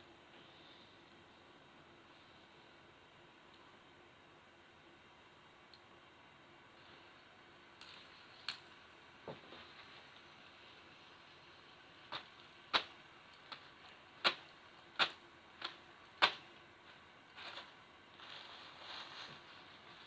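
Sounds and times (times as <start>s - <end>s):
tissue rustling: 16.8s - 20.0s.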